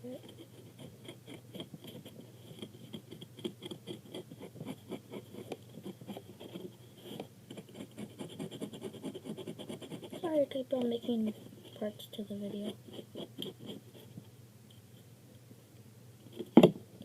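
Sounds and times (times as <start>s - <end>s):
pen scratching on paper: 0.1s - 10.4s, 12.5s - 14.2s.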